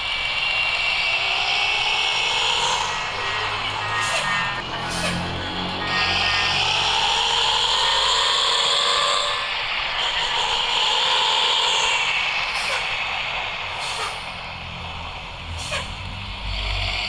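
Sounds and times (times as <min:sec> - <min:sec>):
diesel bus engine pulling away: 0:02.5 - 0:09.1, 0:13.8 - 0:17.0.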